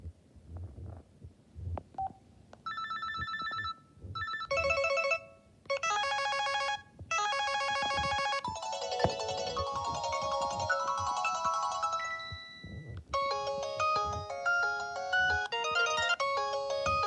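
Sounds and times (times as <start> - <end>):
phone beep: 2.0 - 6.6, 7.2 - 16.2
ringtone melody: 4.2 - 17.0
fast-pulsing electronic ringtones: 7.2 - 16.2.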